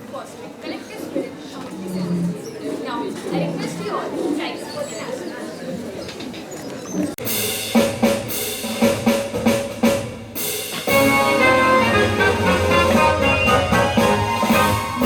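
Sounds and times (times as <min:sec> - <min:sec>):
anthem drum strikes: 0:07.2 - 0:15.0
sustained instrumental notes: 0:10.8 - 0:15.0.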